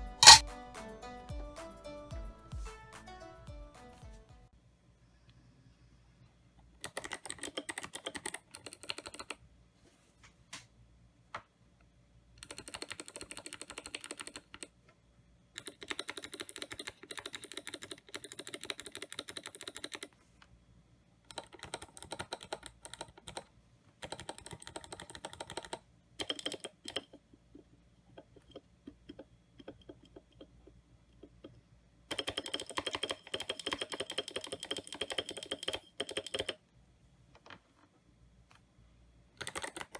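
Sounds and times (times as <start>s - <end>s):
clicky mechanical keyboard typing: 0.2s - 0.4s, 6.8s - 9.4s, 12.4s - 14.7s, 15.6s - 20.1s, 21.3s - 27.2s, 31.2s - 36.6s, 39.4s - 39.9s.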